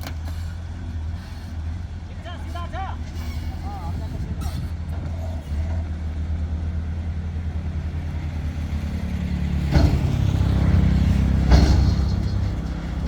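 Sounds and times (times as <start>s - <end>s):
diesel engine running: 0.0s - 13.0s
machinery clatter: 8.1s - 13.0s.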